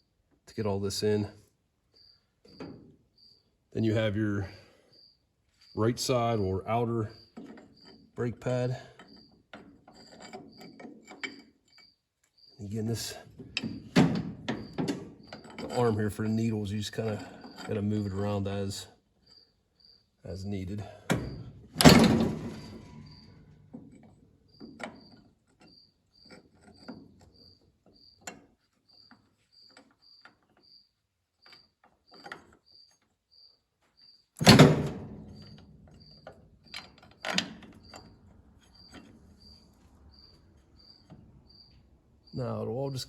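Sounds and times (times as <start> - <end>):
cricket chirping: 1.9 - 5.8, 7.0 - 43.0
metal clanks and knocks: 9.0 - 11.9, 13.0 - 16.3, 20.8 - 27.6, 34.4 - 39.6.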